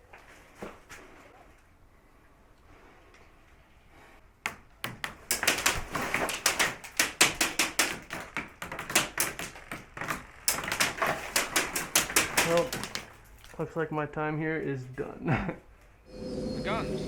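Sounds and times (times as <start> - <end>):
airsoft guns firing: 4.9 - 13.2.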